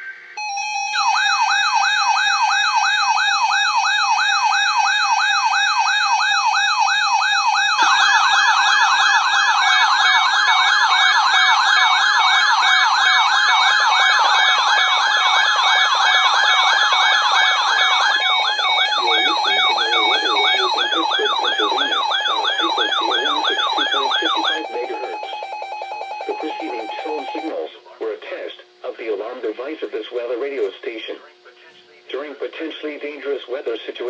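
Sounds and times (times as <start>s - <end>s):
warbling siren alarm: 0.4s - 27.6s.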